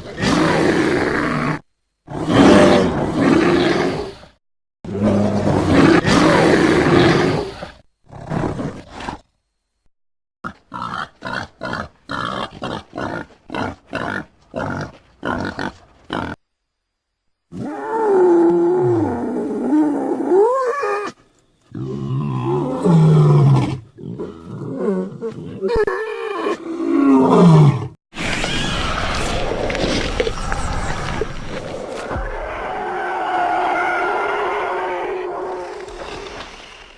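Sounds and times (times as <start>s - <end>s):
creature roaring: 21.8s - 28.0s, 31.6s - 36.6s
drawn-out sliding creature calls: 31.9s - 36.9s.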